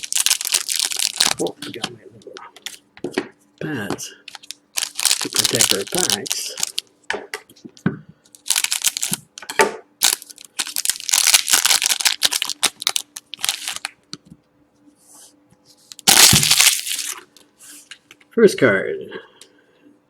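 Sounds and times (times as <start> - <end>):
wrapper crinkling and tearing: 0.0 - 2.0, 4.3 - 6.9, 8.4 - 9.4, 10.0 - 14.0, 15.9 - 17.3.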